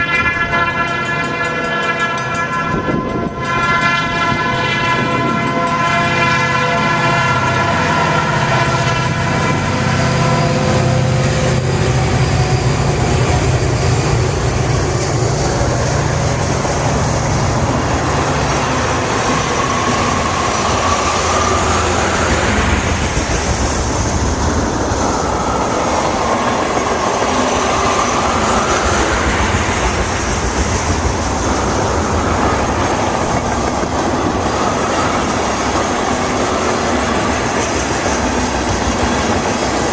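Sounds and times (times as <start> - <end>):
train horn chord: 0.0 - 22.5
train cars rumbling and clattering: 0.0 - 39.9
rising and falling whine: 8.1 - 37.4.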